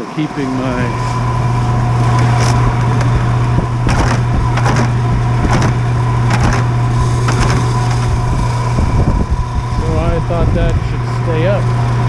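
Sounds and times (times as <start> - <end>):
faint steady whine: 0.0 - 12.0
heat pump humming: 0.0 - 12.0
short crunching noises: 3.8 - 8.1.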